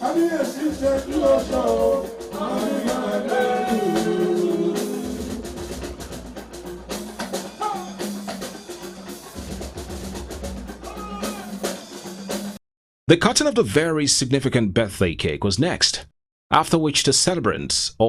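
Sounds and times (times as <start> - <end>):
person singing: 0.0 - 5.9
live band playing: 0.0 - 12.6
snare and bass drum beats: 0.0 - 12.6.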